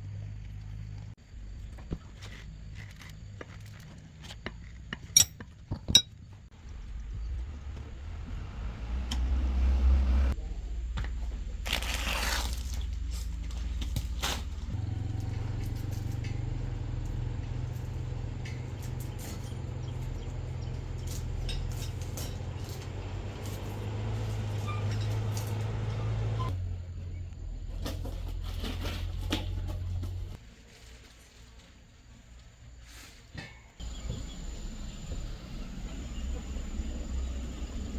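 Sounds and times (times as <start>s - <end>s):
low machine hum: 6.6s - 30.4s, 33.8s - 37.9s.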